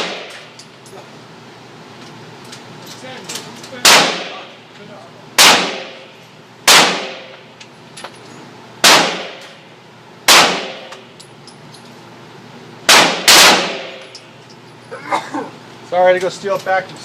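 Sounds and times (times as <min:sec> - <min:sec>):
pistol shots echoing indoors: 0:00.0 - 0:00.5, 0:03.8 - 0:04.4, 0:05.4 - 0:07.4, 0:08.8 - 0:09.6, 0:10.3 - 0:11.0, 0:12.9 - 0:14.0.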